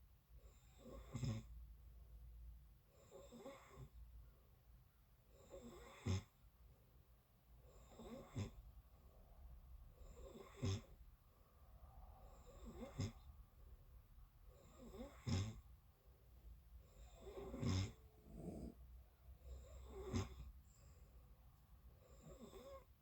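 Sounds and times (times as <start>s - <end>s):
person snoring faintly: 12.4s - 13.3s, 16.9s - 18.8s, 19.6s - 21.0s.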